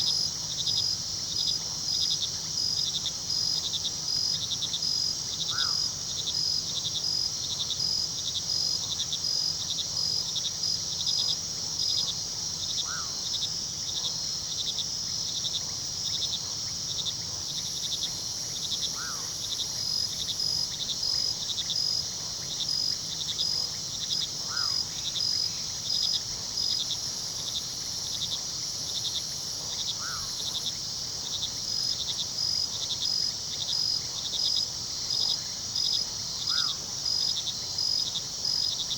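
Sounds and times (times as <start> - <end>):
crickets chirping: 0.0 - 38.9.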